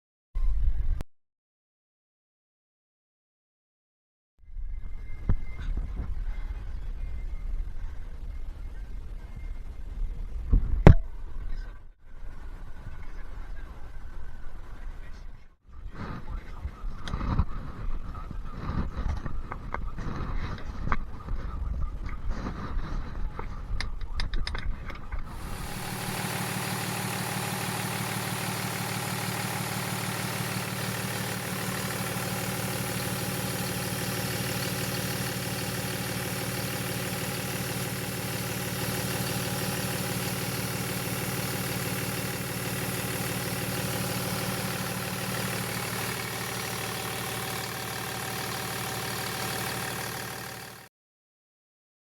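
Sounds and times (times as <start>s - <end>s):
car engine idling: 25.3s - 50.8s.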